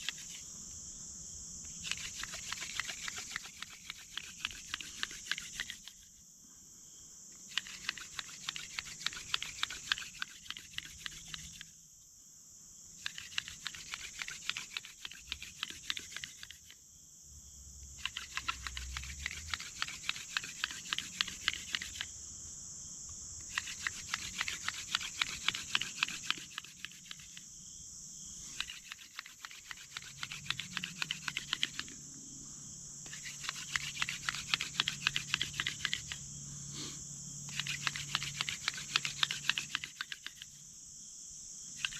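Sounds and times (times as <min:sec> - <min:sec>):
hand drill spindle grinding wood: 0:00.0 - 0:00.4, 0:01.8 - 0:06.1, 0:07.5 - 0:11.6, 0:13.0 - 0:16.7, 0:18.0 - 0:22.0, 0:23.5 - 0:27.4, 0:28.5 - 0:32.0, 0:33.0 - 0:36.2, 0:37.5 - 0:40.6.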